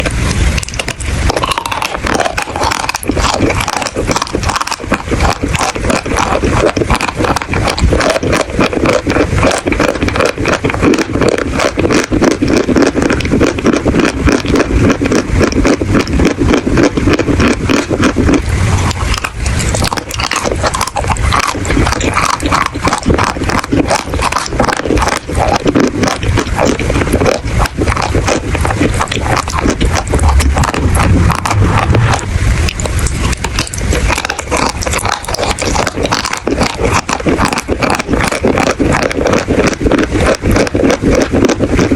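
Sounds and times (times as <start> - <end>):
chalk being chewed: 0.0 - 41.9.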